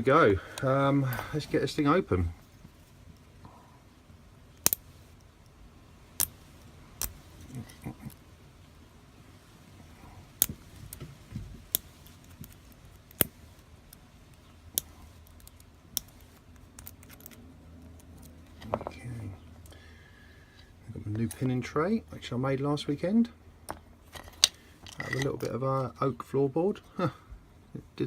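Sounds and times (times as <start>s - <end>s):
metallic clicks of lock and tools: 24.1s - 25.5s.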